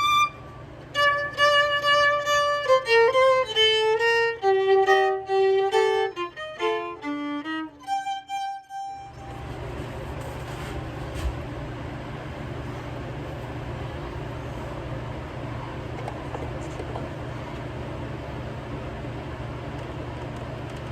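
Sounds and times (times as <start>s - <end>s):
steady noise with low hum: 0.0s - 7.9s, 9.1s - 20.9s
solo violin melody: 0.0s - 9.4s.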